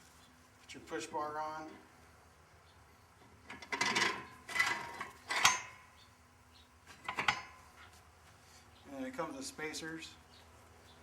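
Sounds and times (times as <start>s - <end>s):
metal clanking and scraping: 3.5s - 5.8s.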